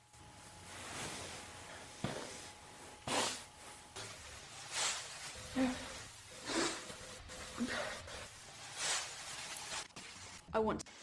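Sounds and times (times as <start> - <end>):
person sniffing and puffing: 3.0 - 3.5, 4.7 - 9.1.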